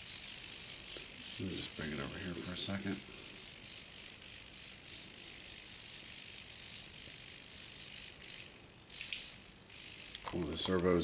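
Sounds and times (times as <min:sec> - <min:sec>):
servos whirring: 0:00.0 - 0:11.0
sharp click: 0:09.0 - 0:09.3.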